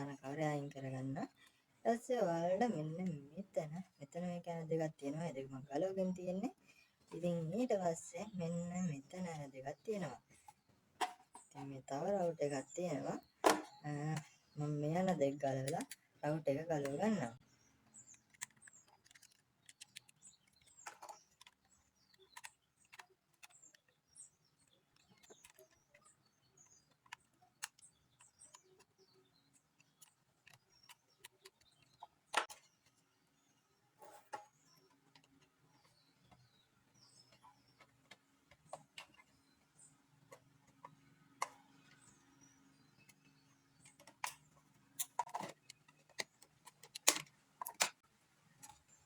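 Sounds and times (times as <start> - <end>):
small clicks of plastic and screws: 17.9 - 33.0, 34.0 - 36.5, 43.0 - 48.0.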